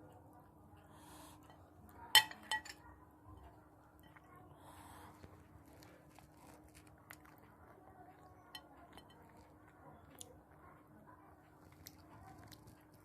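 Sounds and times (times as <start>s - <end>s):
clinks of dishes and cutlery: 1.5s - 2.8s, 8.5s - 9.4s
faint chewing: 2.7s - 13.0s.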